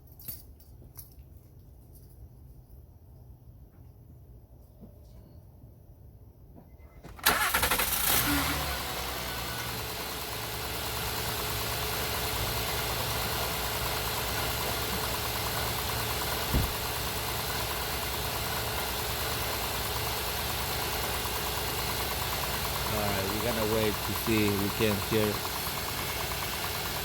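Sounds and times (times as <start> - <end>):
car engine starting and idling: 6.9 - 27.0
short thump: 16.5 - 16.8.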